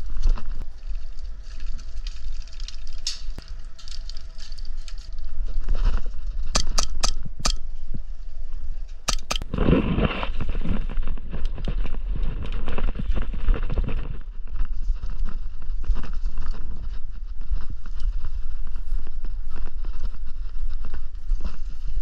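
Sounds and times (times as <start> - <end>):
gear movement: 0.0 - 22.0
low microphone rumble: 0.0 - 22.0
rustling: 0.0 - 22.0
airsoft gun cracks: 9.1 - 9.4.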